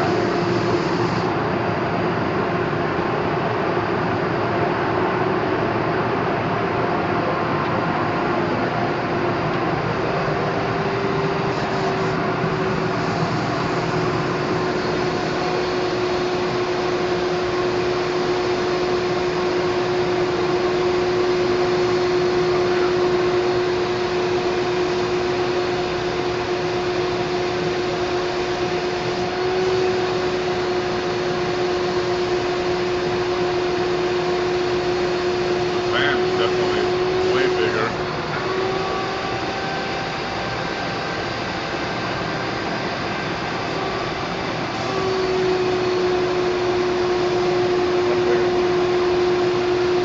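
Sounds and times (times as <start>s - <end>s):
air hissing from spray gun: 0.0s - 1.5s, 10.4s - 38.5s
spray rig motor hum: 0.0s - 50.0s.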